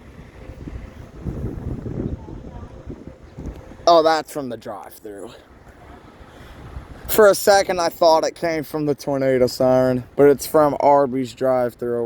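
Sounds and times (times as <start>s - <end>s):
wind buffeting microphone: 0.0s - 8.6s.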